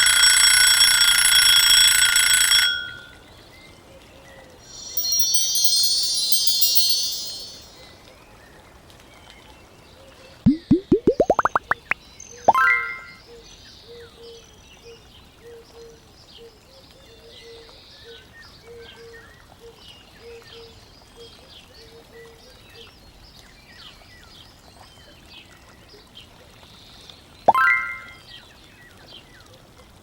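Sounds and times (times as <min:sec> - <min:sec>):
chime: 0:04.7 - 0:07.8, 0:12.5 - 0:13.2, 0:27.5 - 0:28.2
trickling water: 0:10.5 - 0:13.2, 0:27.5 - 0:28.3.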